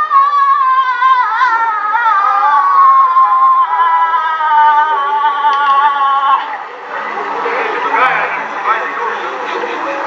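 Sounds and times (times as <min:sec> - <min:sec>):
person singing long high notes: 0:00.0 - 0:06.6.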